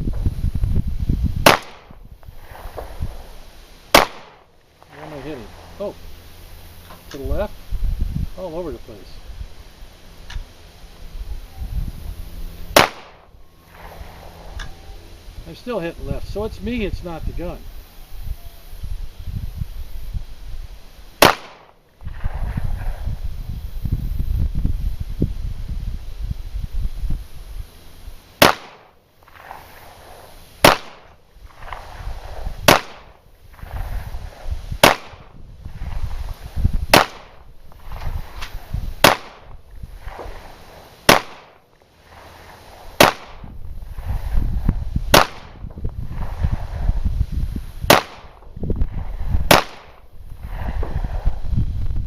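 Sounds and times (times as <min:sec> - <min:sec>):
single gunshots: 0:01.4 - 0:03.0, 0:03.9 - 0:05.6, 0:12.7 - 0:14.2, 0:21.2 - 0:23.0, 0:28.4 - 0:29.6, 0:30.6 - 0:31.9, 0:32.6 - 0:33.8, 0:34.8 - 0:35.9, 0:36.9 - 0:41.6, 0:43.0 - 0:43.5, 0:45.1 - 0:46.4, 0:47.9 - 0:48.4, 0:49.5 - 0:50.6
low rumble: 0:04.7 - 0:16.7, 0:22.0 - 0:28.0, 0:33.4 - 0:40.8, 0:42.0 - 0:49.5.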